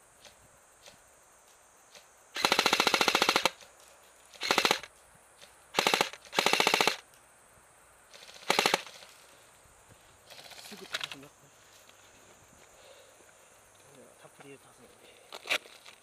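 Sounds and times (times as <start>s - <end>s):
airsoft rifle firing bursts: 2.4s - 3.6s, 4.4s - 4.9s, 5.8s - 7.0s, 8.2s - 9.0s.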